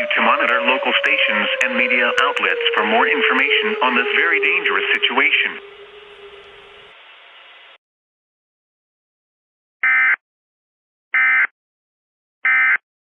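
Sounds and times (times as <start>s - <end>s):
announcement voice: 0.0s - 6.9s.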